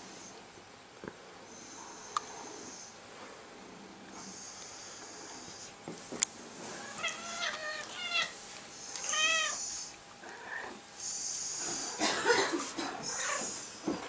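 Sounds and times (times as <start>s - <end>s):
cat meowing: 6.8s - 8.4s, 9.0s - 9.6s.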